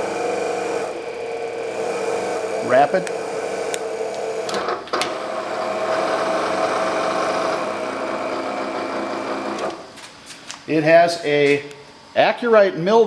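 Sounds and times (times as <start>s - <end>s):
motor and gear whine: 0.0s - 10.0s.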